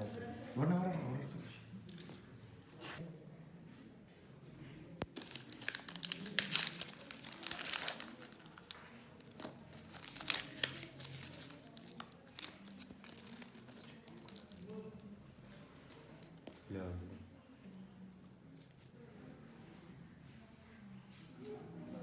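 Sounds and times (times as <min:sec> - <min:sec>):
packaging crinkling and tearing: 0:05.1 - 0:14.9.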